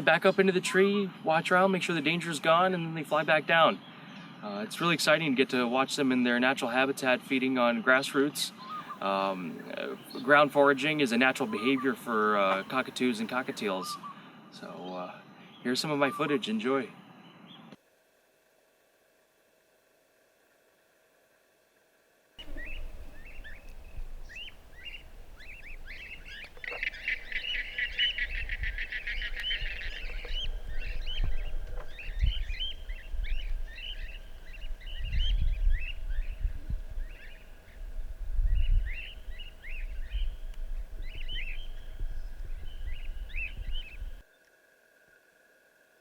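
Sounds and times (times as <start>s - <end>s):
parrots chirping: 22.4s - 36.4s
wind rumble on microphone: 22.4s - 44.2s.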